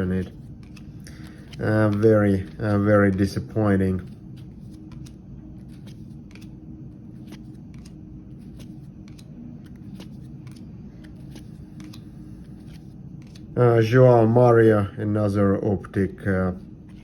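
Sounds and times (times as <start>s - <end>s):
trading cards sliding and clicking: 0.0s - 13.6s, 16.6s - 17.0s
steady low hum: 0.0s - 17.0s.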